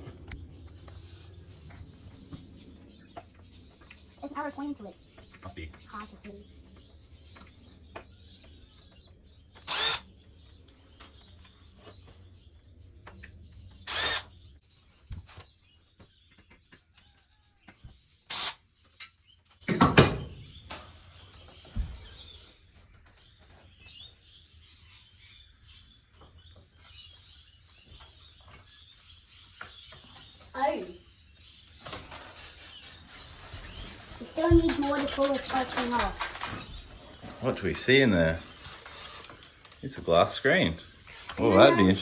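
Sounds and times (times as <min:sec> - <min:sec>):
birds chirping: 0:00.0 - 0:42.0
electric screwdriver whirring: 0:09.6 - 0:10.1, 0:13.9 - 0:14.3, 0:18.3 - 0:18.6, 0:38.4 - 0:39.8, 0:41.1 - 0:42.0.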